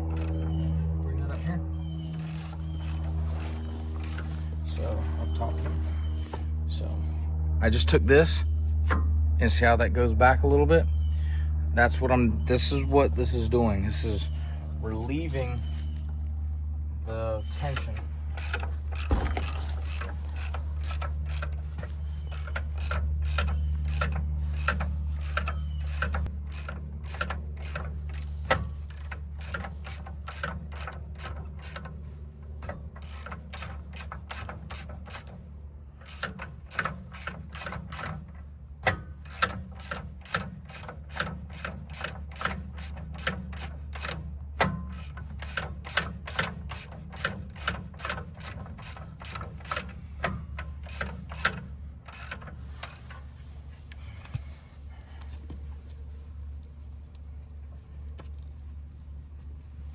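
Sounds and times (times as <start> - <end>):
steady low hum: 0.0 - 59.9
ratchet wrench clicking: 2.2 - 4.2, 17.7 - 21.7, 22.3 - 32.0, 33.0 - 35.4, 36.0 - 53.2.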